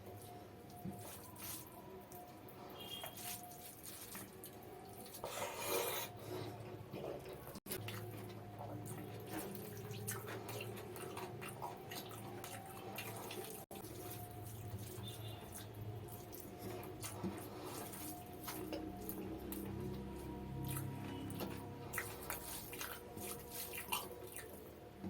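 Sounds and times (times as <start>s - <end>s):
wet chewing and lip smacking: 7.0s - 24.7s.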